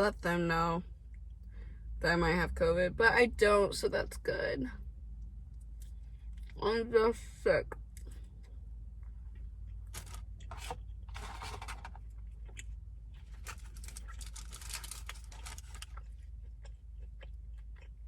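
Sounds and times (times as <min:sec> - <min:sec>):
low steady hum: 0:00.0 - 0:18.0
paper packaging rustling: 0:09.9 - 0:12.0, 0:13.3 - 0:16.0
chewing: 0:12.2 - 0:18.0.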